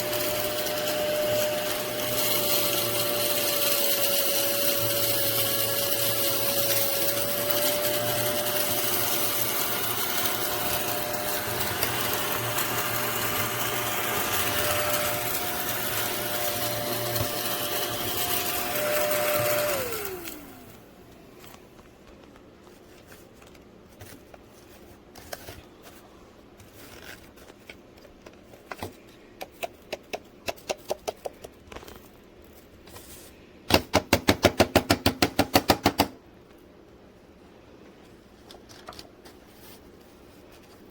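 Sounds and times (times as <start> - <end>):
small vacuum motor whining: 0.0 - 21.2.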